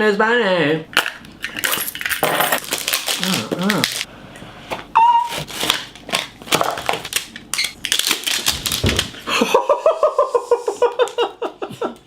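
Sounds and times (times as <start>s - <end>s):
packaging crinkling: 1.6s - 4.1s, 5.3s - 9.3s.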